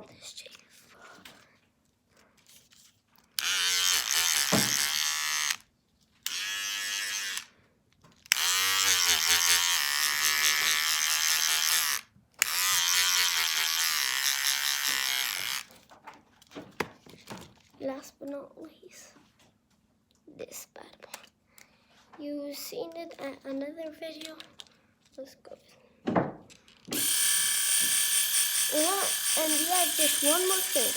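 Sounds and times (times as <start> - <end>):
electric shaver buzzing: 3.4 - 5.6, 6.3 - 7.5, 8.3 - 15.7, 26.9 - 30.9.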